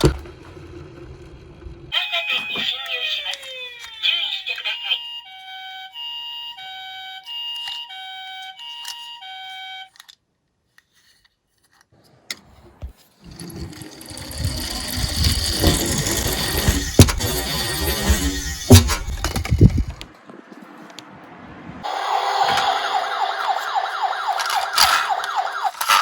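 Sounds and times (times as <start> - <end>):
toy car rolling down slope: 0.0 - 4.0, 10.9 - 20.1, 21.8 - 26.0
toy two-tone siren: 1.9 - 10.1, 14.0 - 19.8, 21.8 - 26.0.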